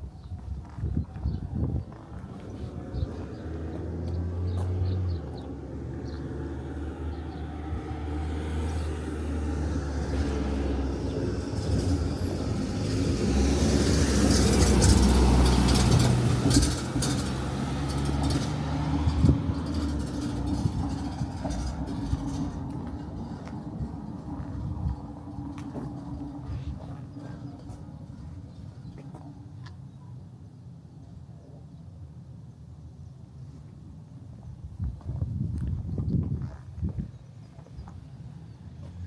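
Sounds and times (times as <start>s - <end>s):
vehicle engine humming: 1.5s - 29.9s.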